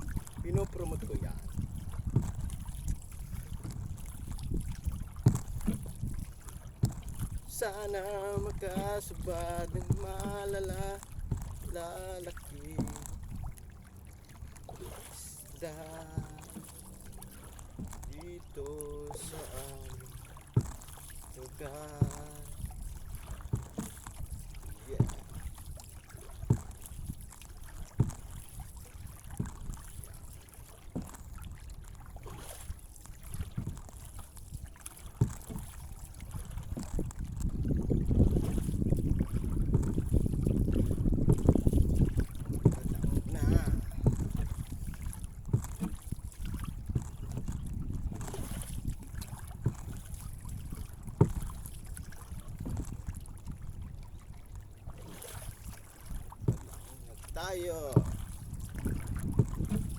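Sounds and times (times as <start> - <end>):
boat knocking: 0.0 - 59.9
wind on microphone: 0.0 - 59.9.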